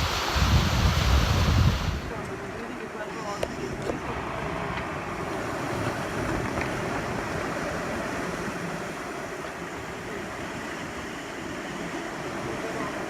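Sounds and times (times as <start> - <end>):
wind rushing: 0.0 - 2.5
sea water rushing past hull: 0.0 - 13.0.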